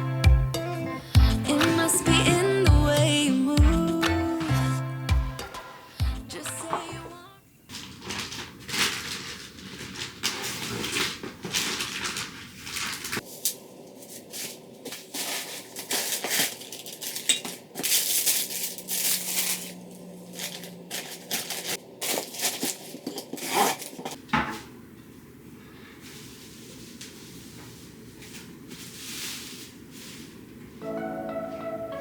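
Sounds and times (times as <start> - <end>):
crinkling and rustling: 7.7 - 30.8.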